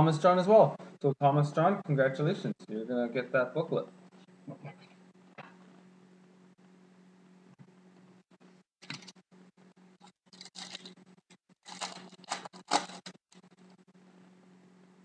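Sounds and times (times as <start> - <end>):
low electrical hum: 0.0 - 15.0
foil pack crinkling and tearing: 10.2 - 11.0, 11.6 - 13.5.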